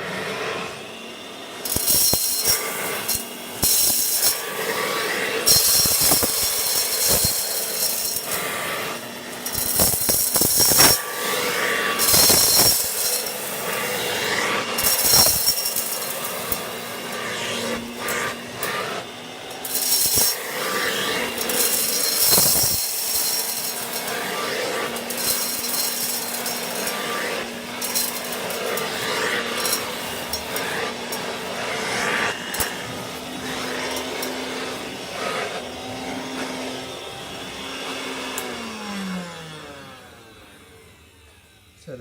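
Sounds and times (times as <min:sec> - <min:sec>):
hand vacuum cleaner motor whine: 0:00.0 - 0:42.0
rice grains clicking: 0:05.4 - 0:14.1, 0:14.7 - 0:17.2, 0:19.6 - 0:30.6.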